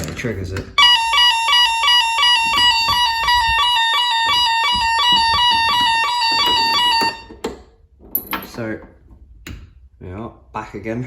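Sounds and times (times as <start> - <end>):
alarm two-tone warble: 0.8 - 7.3.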